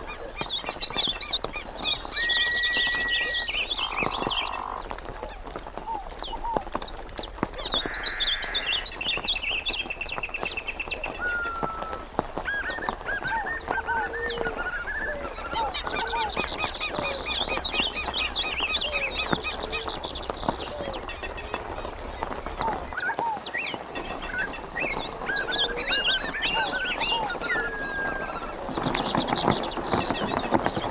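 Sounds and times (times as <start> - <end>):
birds chirping and trilling: 0.0 - 30.9.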